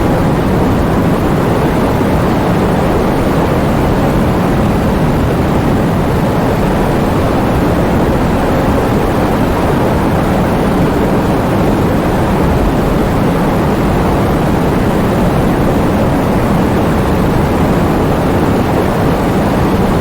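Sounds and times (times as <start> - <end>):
heavy rain in strong wind: 0.0 - 20.0.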